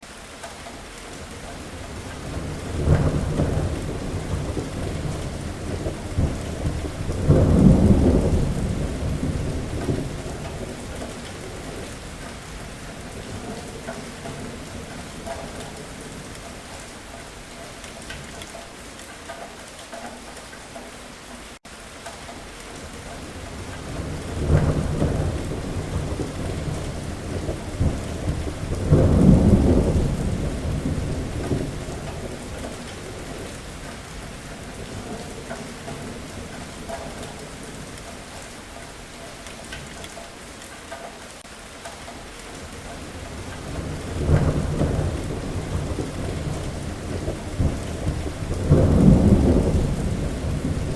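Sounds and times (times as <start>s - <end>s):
steady rain: 0.0s - 50.9s
rolling thunder: 1.8s - 16.4s, 22.9s - 38.0s, 42.7s - 50.9s.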